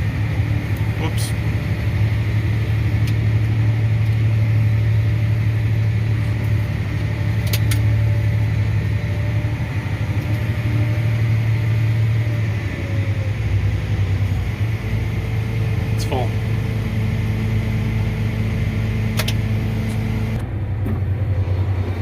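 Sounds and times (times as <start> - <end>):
diesel engine droning: 0.0 - 22.0
sharp clicks: 19.1 - 20.0.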